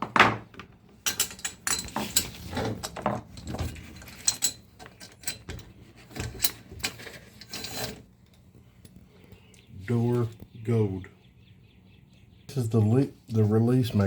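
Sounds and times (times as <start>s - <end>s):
small metal hardware clicking and rattling: 1.0s - 9.0s.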